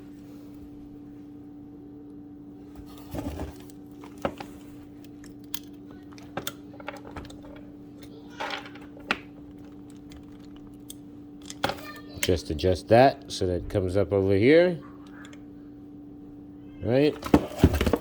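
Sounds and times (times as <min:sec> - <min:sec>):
steady low hum: 0:00.0 - 0:18.0
small parts clicking and knocking: 0:05.0 - 0:12.4.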